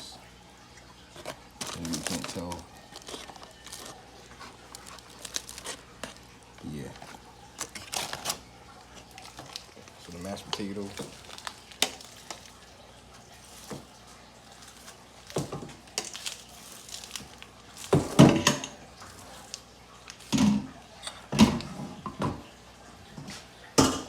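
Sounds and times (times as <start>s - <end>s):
dishes knocking and clunking: 15.4s - 15.8s, 17.9s - 18.8s, 20.3s - 22.5s, 23.2s - 24.0s.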